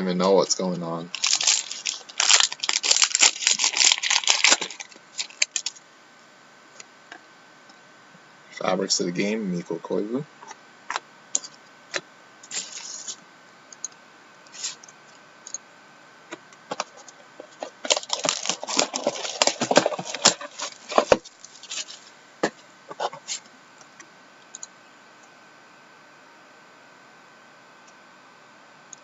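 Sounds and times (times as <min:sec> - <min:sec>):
packaging crinkling: 0:00.4 - 0:05.8, 0:16.7 - 0:22.1.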